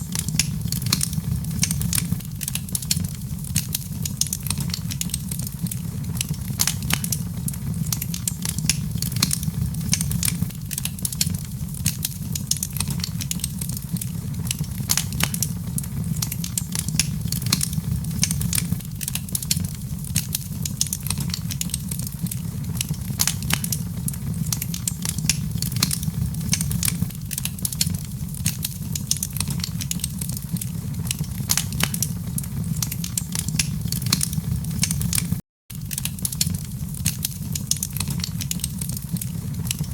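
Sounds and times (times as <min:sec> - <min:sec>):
low rumble: 0:00.0 - 0:02.4, 0:05.5 - 0:10.8, 0:14.2 - 0:19.0, 0:22.0 - 0:27.2, 0:30.8 - 0:35.4
wood fire crackling: 0:00.0 - 0:39.9.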